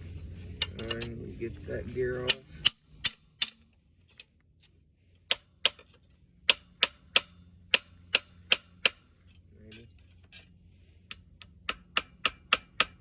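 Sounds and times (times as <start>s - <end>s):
hand tool tapping steel: 6.5s - 9.1s, 11.1s - 13.0s.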